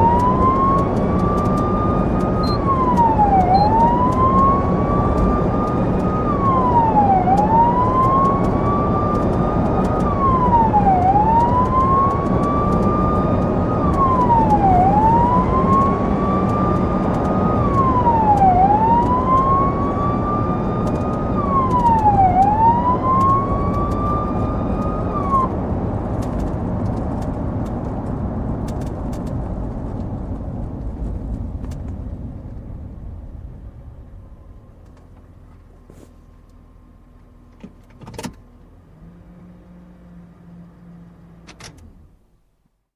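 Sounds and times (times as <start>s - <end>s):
police siren wailing: 0.0s - 26.6s
road and engine noise: 0.0s - 42.9s.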